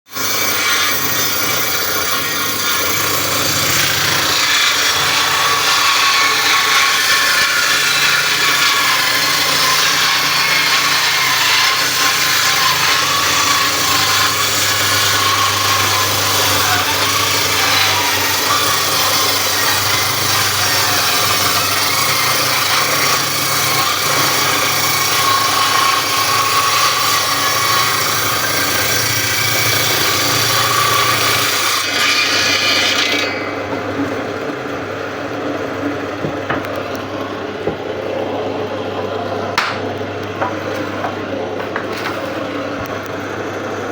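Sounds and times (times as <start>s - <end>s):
saw cutting through wood: 0.1s - 34.1s.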